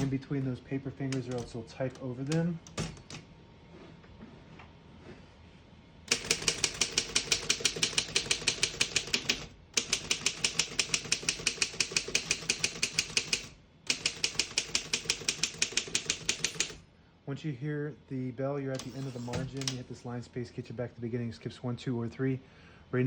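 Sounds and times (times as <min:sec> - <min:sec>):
typewriter keys clicking: 0:06.1 - 0:16.8, 0:18.8 - 0:19.8.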